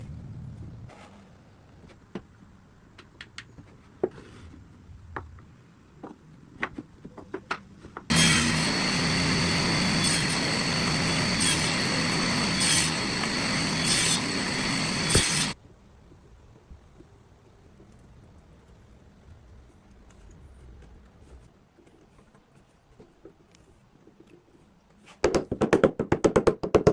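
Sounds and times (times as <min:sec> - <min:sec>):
power tool whining: 0:08.1 - 0:15.6.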